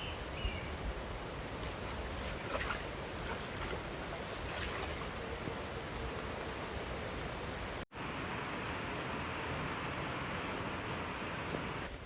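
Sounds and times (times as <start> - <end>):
faint high steady tone: 0.0 - 7.8
rushing outdoor background noise: 0.0 - 12.0.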